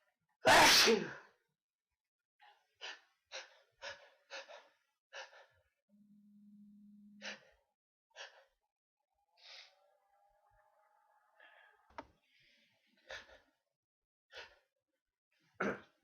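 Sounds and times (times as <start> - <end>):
faint low hum: 6.0 - 7.6.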